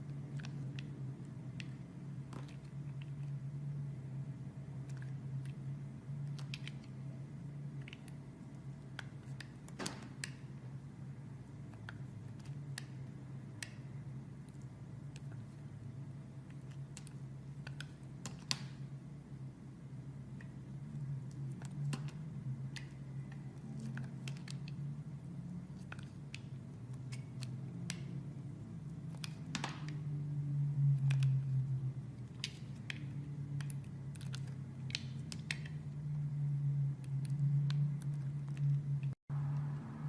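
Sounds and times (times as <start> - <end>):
low steady hum: 0.0 - 40.0.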